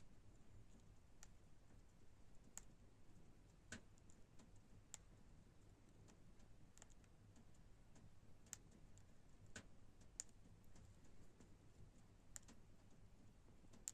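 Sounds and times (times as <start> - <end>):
faint sharp clicks and taps: 0.0 - 13.9.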